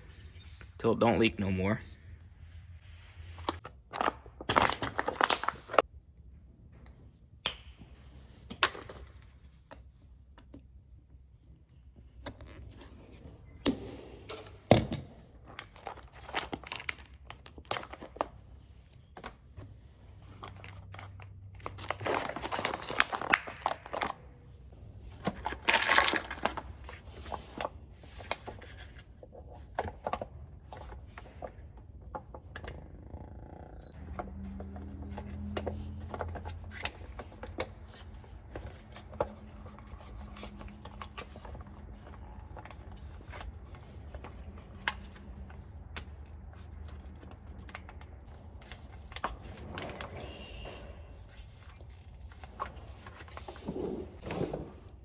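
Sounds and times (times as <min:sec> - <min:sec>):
crinkling and rustling: 0:02.8 - 0:05.9, 0:08.0 - 0:55.0.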